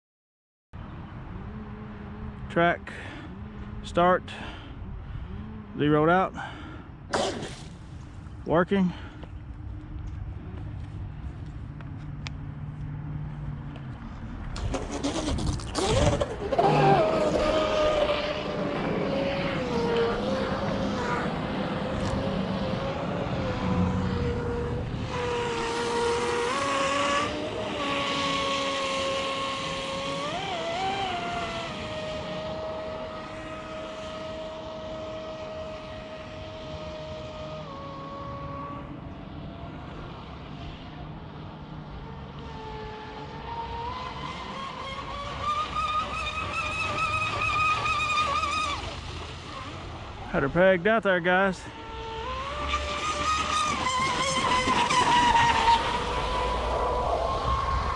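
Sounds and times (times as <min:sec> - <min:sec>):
electric motor whining: 0:14.5 - 0:38.9, 0:42.6 - 0:50.3, 0:51.7 - 0:57.9.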